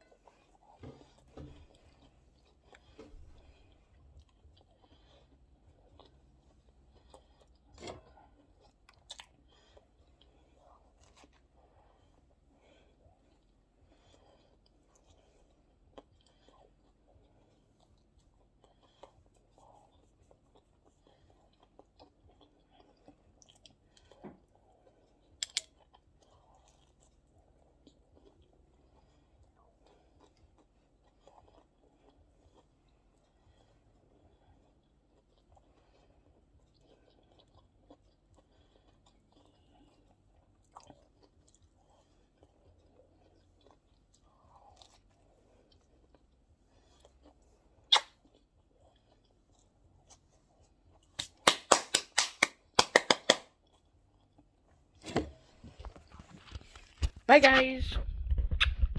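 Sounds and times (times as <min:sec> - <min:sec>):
person chewing food: 0:00.0 - 0:57.2
mouth clicks and smacks: 0:25.4 - 0:26.0, 0:47.8 - 0:48.4, 0:51.0 - 0:53.8, 0:55.6 - 0:58.9
soft mouth clicks: 0:47.9 - 0:48.2, 0:58.4 - 0:58.9.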